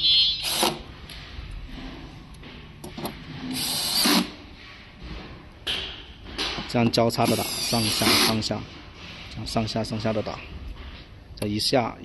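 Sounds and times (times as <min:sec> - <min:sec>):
electric screwdriver driving screw: 0:00.4 - 0:00.8, 0:03.5 - 0:04.3, 0:07.2 - 0:08.4.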